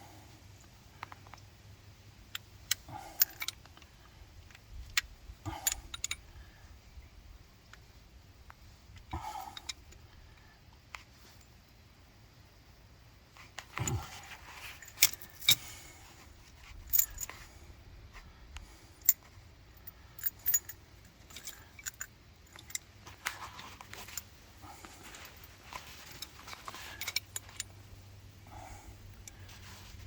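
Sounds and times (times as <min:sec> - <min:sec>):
metallic clinks of hand tools: 0:02.7 - 0:03.6, 0:05.5 - 0:06.2, 0:14.8 - 0:15.7, 0:16.9 - 0:17.4, 0:19.8 - 0:22.9, 0:25.1 - 0:27.7.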